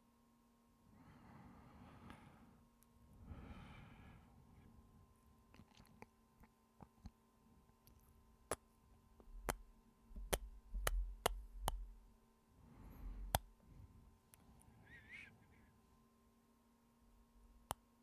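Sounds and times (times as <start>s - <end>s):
soft breath: 0.9s - 4.9s, 12.6s - 15.9s
lip smacks: 5.5s - 7.2s.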